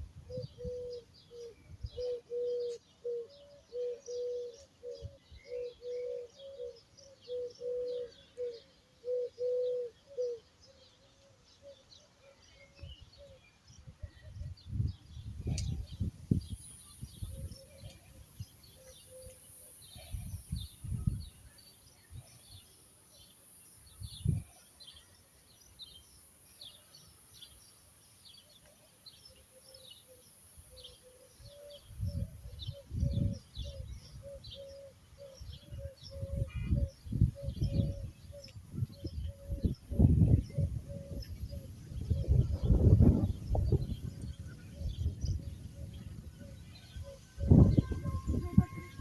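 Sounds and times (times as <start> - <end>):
small birds chirping: 0.3 - 49.0
low repeated note: 47.3 - 49.0.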